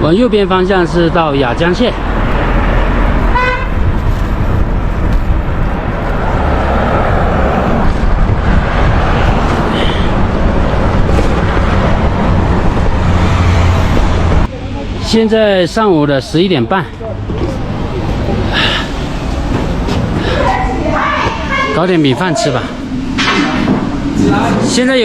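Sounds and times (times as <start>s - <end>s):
wind and road noise: 0.0s - 25.0s
vehicle horn toot: 3.3s - 3.8s.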